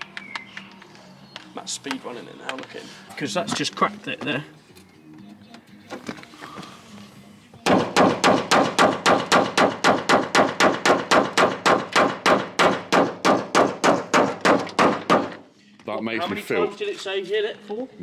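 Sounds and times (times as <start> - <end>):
hammer blows on metal: 7.6 - 15.4.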